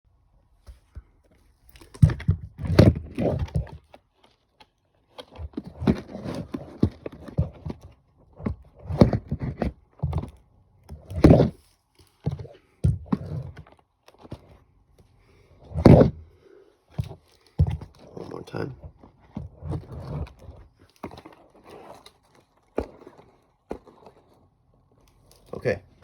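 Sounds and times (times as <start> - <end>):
knocks and thumps: 12.3 - 13.6, 15.7 - 16.2.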